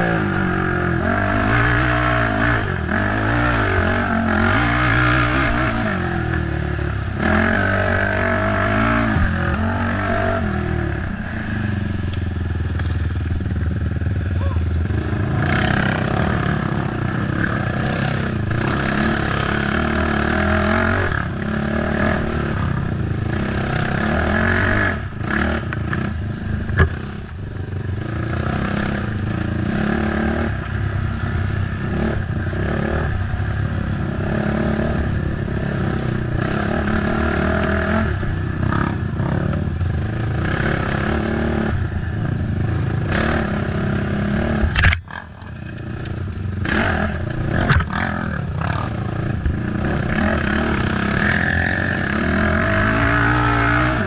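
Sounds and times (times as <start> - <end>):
atv engine revving: 0.0 - 54.0
clatter over rough ground: 44.5 - 50.4.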